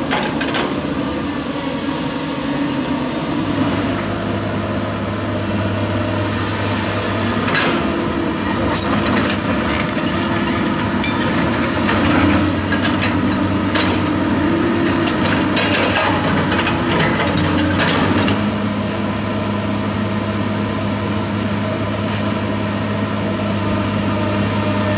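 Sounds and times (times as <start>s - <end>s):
knocks and clanks: 0.0s - 1.2s, 6.7s - 18.7s
excavator diesel engine running: 0.0s - 24.9s.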